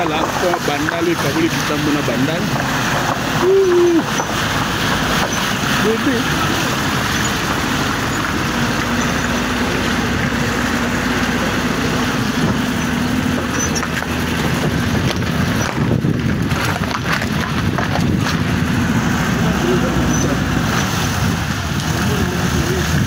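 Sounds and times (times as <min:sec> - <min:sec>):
rushing noise: 0:00.0 - 0:23.0
vehicle engine running: 0:00.0 - 0:23.0.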